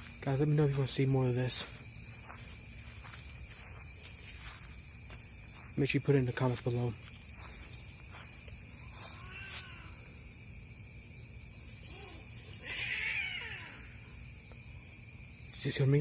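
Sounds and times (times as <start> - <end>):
cats yowling: 9.0 - 10.1, 11.8 - 14.0.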